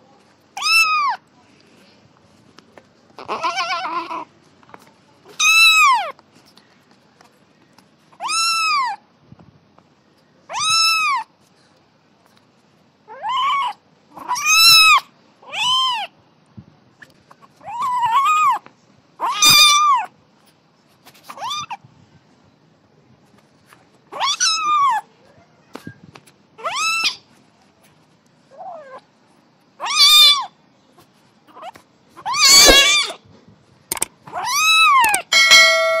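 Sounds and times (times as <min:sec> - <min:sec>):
kitten meowing: 0:00.6 - 0:01.2, 0:03.2 - 0:04.2, 0:05.3 - 0:06.1, 0:10.5 - 0:11.3, 0:13.1 - 0:16.1, 0:19.2 - 0:20.1, 0:21.4 - 0:21.8, 0:24.2 - 0:25.0, 0:26.6 - 0:27.2, 0:29.8 - 0:30.5, 0:31.5 - 0:33.2, 0:34.3 - 0:35.8.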